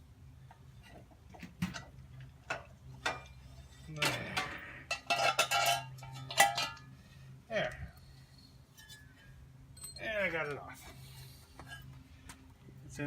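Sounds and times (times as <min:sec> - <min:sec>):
hand tools clattering on metal: 0:01.6 - 0:06.9
metallic ringing: 0:03.0 - 0:07.0, 0:08.7 - 0:10.3.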